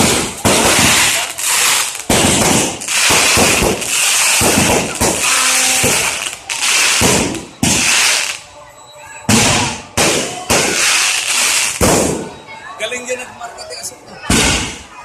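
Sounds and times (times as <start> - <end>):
fireworks bangs: 0.0 - 8.5, 9.3 - 12.4, 14.3 - 14.9
crackling and hissing shells: 0.6 - 8.5.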